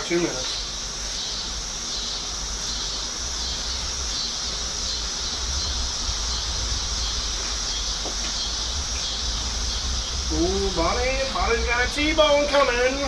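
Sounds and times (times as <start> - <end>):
high-pitched insect chorus: 0.0 - 13.0
low rumble: 5.3 - 13.0.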